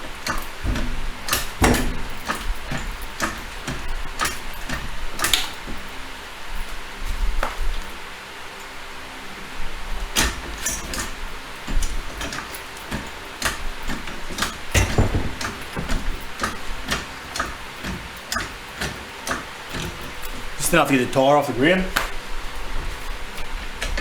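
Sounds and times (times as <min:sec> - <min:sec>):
car jack clacking: 0:00.0 - 0:06.4, 0:10.0 - 0:22.3.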